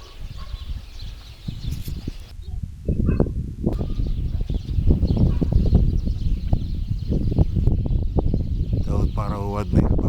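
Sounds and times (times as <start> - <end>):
faint birds: 0.0 - 10.0
wind buffeting microphone: 0.0 - 10.0.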